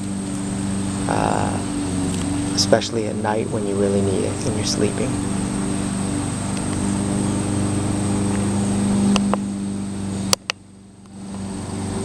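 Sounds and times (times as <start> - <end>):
air conditioner humming: 0.0 - 12.0
sharp click: 9.1 - 9.4, 10.3 - 10.6.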